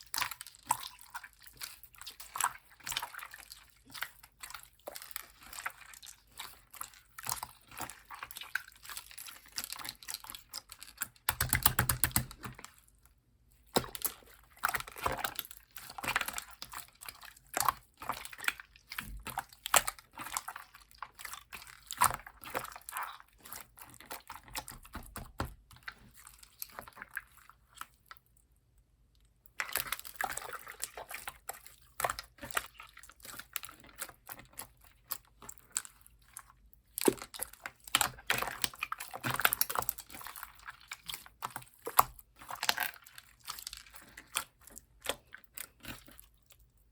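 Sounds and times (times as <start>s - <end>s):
slime squishing and popping: 9.0s - 12.8s.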